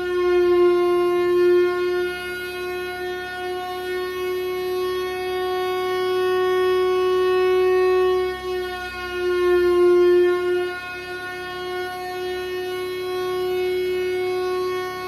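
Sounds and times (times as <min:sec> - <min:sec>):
air raid siren steady tone: 0:00.0 - 0:15.0.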